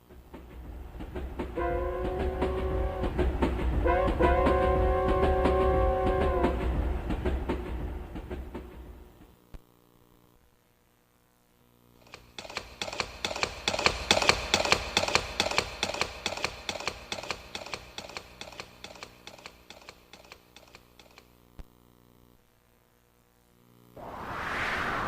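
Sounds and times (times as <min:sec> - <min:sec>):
fast run of sharp clicks: 0:12.0 - 0:21.7.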